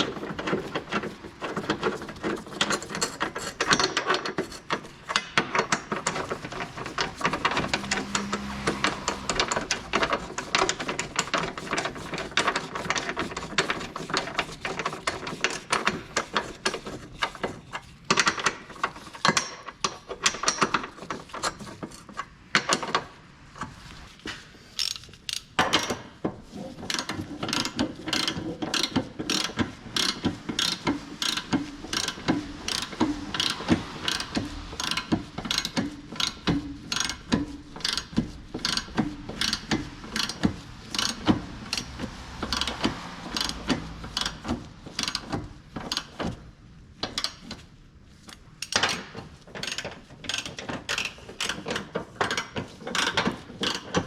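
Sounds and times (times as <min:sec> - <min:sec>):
ratchet wrench clicking: 0:24.8 - 0:26.0, 0:26.9 - 0:46.2, 0:48.6 - 0:49.0, 0:49.6 - 0:54.0.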